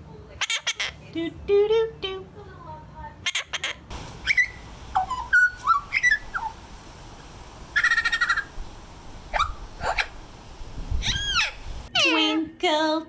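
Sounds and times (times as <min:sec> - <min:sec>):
parrot whistling and chirping: 0:03.9 - 0:11.9.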